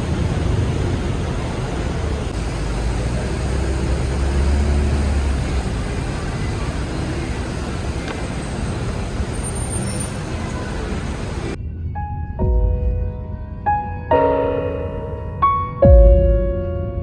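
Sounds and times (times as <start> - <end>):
vehicle running rumble: 0.0 - 11.6.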